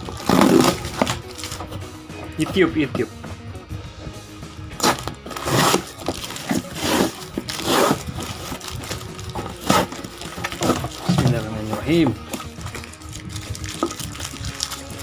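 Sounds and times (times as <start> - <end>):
cardboard and plastic crinkling: 4.8 - 15.0.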